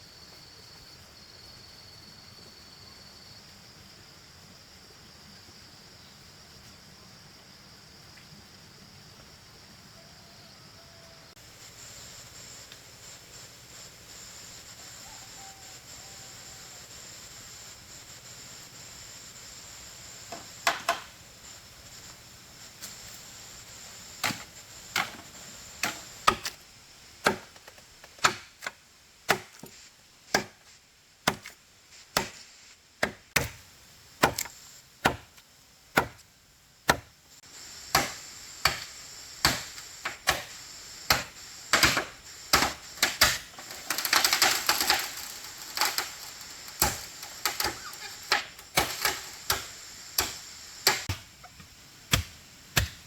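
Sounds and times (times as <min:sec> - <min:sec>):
blade chopping into wood: 0:24.2 - 0:25.2, 0:25.8 - 0:26.6, 0:27.2 - 0:28.7, 0:29.3 - 0:29.7, 0:30.3 - 0:30.6, 0:31.2 - 0:31.6, 0:32.2 - 0:32.4, 0:33.0 - 0:33.6, 0:34.2 - 0:35.4, 0:36.0 - 0:36.2, 0:36.9 - 0:37.1, 0:37.9 - 0:40.5, 0:41.1 - 0:51.3, 0:52.1 - 0:53.0.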